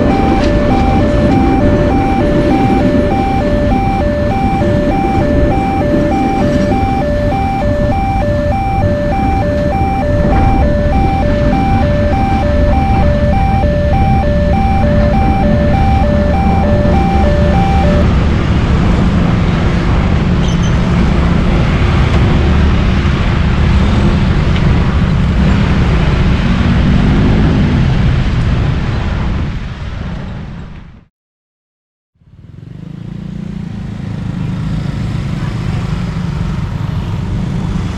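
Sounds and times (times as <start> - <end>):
electronic crossing bell dinging: 0.0 - 18.0
traffic rumble: 0.0 - 29.2.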